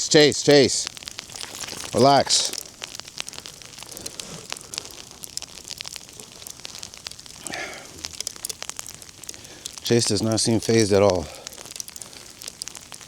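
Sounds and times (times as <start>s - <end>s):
small crackles and clicks: 0.0s - 13.0s
footsteps crunching in snow: 1.3s - 2.6s.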